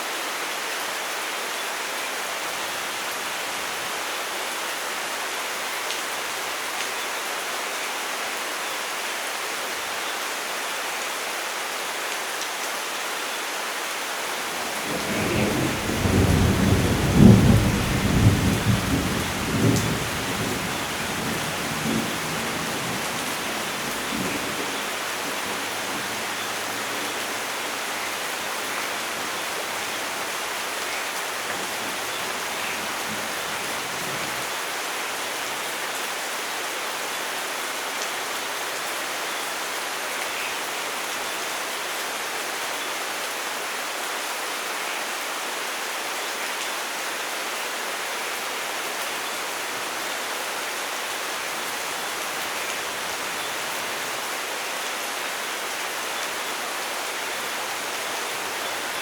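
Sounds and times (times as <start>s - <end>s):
heavy rain: 0.0s - 59.0s
thunder rumbling: 14.7s - 27.6s.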